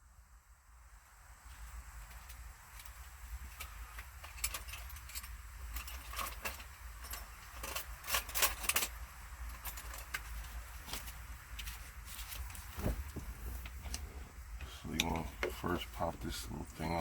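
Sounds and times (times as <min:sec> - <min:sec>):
low steady rumble: 0:09.1 - 0:17.0.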